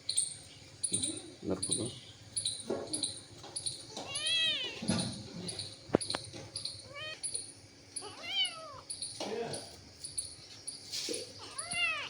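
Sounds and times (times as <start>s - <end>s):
cat meowing: 4.0s - 4.8s, 6.8s - 7.2s, 8.0s - 8.9s, 11.4s - 12.0s.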